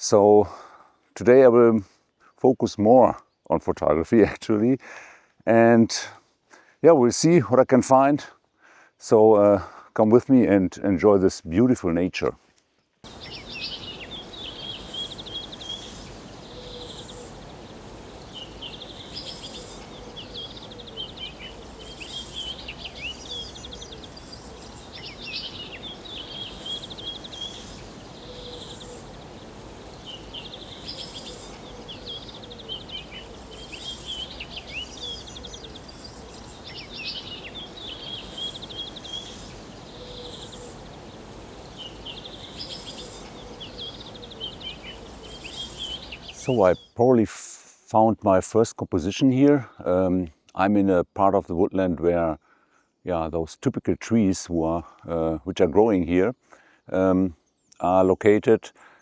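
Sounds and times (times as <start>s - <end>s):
faint lower bird call: 13.1s - 47.0s
songbirds trilling phrases: 13.1s - 47.2s, 54.0s - 59.0s.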